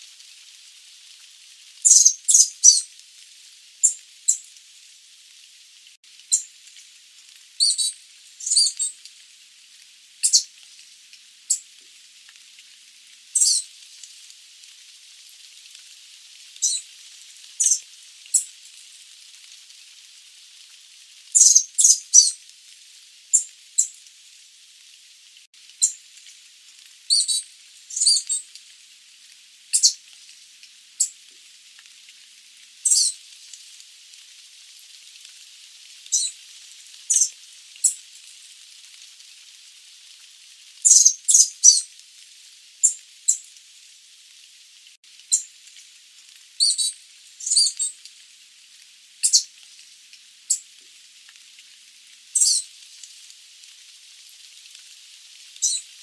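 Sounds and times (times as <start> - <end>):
steady hiss: 0.0 - 56.0
birds giving high-pitched calls: 1.9 - 2.9, 7.6 - 9.0, 10.2 - 10.5, 13.4 - 13.7, 16.6 - 16.9, 17.6 - 18.5, 21.4 - 22.4, 27.1 - 28.4, 29.8 - 30.0, 32.9 - 33.2, 36.1 - 36.3, 37.1 - 38.0, 40.9 - 41.8, 46.6 - 47.9, 49.2 - 49.5, 52.4 - 52.6, 55.6 - 55.8.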